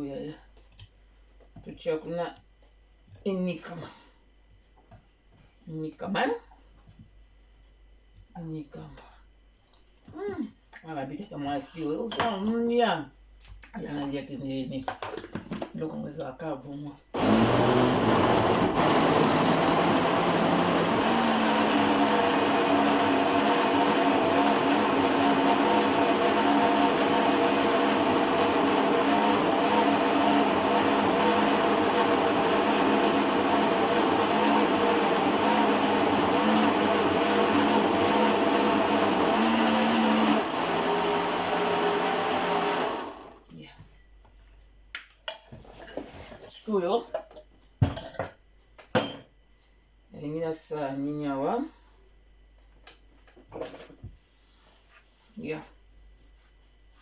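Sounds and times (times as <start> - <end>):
electric blender running: 17.2 - 43.4.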